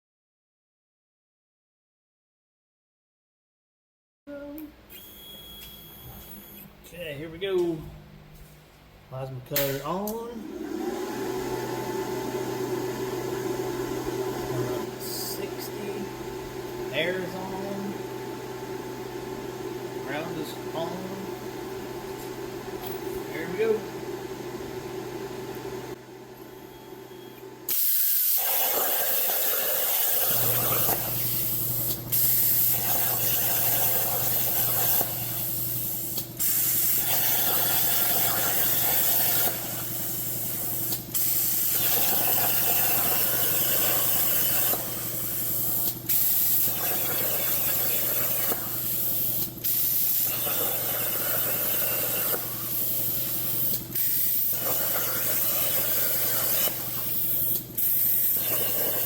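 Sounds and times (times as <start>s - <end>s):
plasma cutter hissing: 27.7s - 59.0s.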